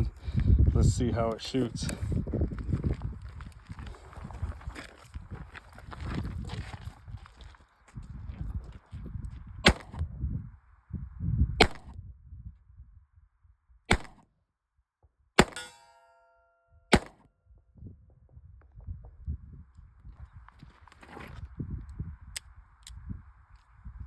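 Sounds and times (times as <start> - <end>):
revolver shots: 9.7 - 10.0, 11.6 - 11.9, 13.9 - 14.2, 15.4 - 16.3, 16.9 - 17.2
metallic ringing: 15.4 - 16.8.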